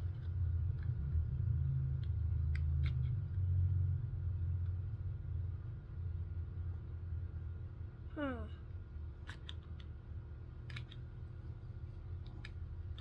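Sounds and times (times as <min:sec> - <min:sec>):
steady low rumble: 0:00.0 - 0:13.0
light plastic clicks: 0:02.0 - 0:03.5, 0:09.2 - 0:10.0, 0:10.6 - 0:13.0.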